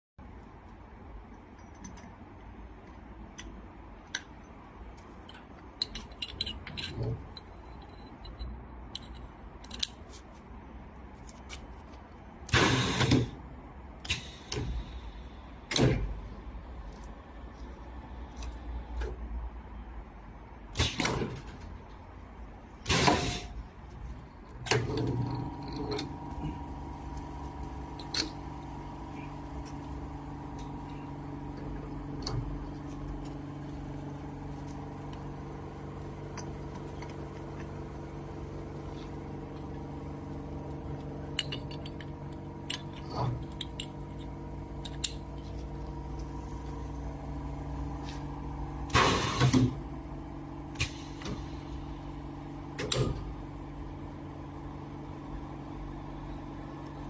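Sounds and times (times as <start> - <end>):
hiss bursts: 12.5 - 13.3, 22.9 - 23.5, 48.9 - 49.7, 50.8 - 51.7.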